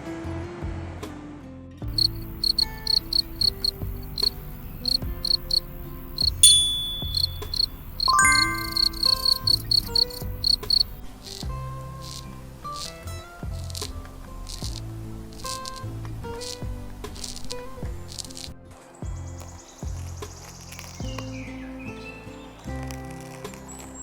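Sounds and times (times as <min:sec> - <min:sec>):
insect chirping: 0:01.9 - 0:11.0
background music: 0:01.9 - 0:20.2.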